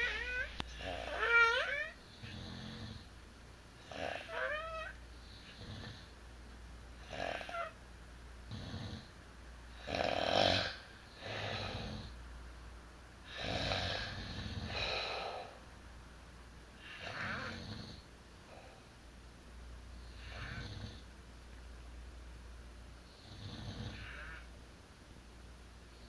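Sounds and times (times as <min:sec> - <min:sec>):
two people snoring: 0:00.0 - 0:03.1, 0:03.8 - 0:04.6, 0:05.3 - 0:06.1, 0:07.0 - 0:07.7, 0:08.5 - 0:09.2, 0:09.8 - 0:12.2, 0:13.3 - 0:15.6, 0:16.8 - 0:18.0, 0:20.1 - 0:21.1, 0:23.2 - 0:24.5.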